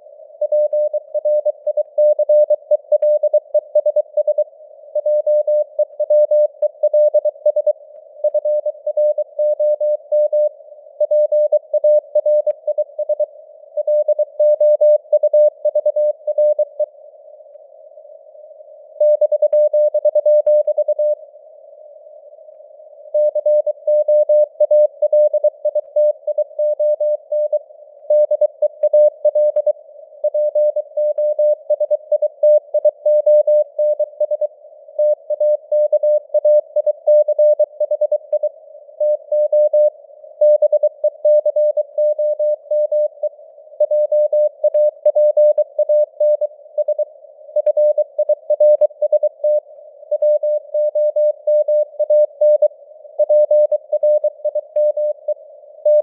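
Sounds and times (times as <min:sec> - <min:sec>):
morse code beeps: 0:39.0 - 0:43.2, 0:43.8 - 0:56.0.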